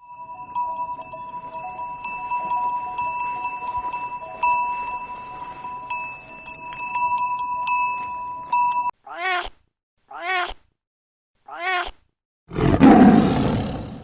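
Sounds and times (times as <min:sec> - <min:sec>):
bell ringing steadily: 0:00.0 - 0:08.9
small bells jingling: 0:00.0 - 0:08.9.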